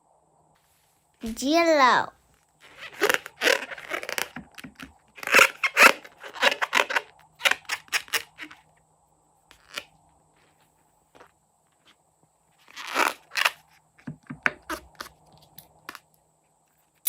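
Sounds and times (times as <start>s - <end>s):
scissors cutting rubber balloon: 2.6s - 8.6s, 14.2s - 15.2s.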